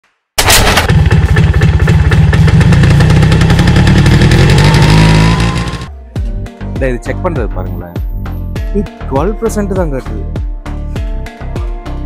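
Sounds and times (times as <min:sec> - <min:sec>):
engine running loudly: 0:00.4 - 0:05.9.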